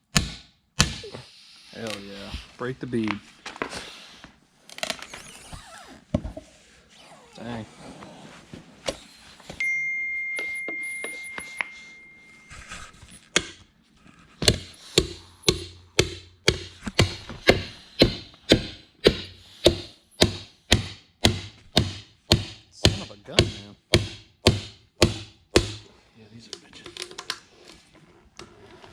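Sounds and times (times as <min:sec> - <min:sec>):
hammer striking wheel rim: 0:14.4 - 0:25.9.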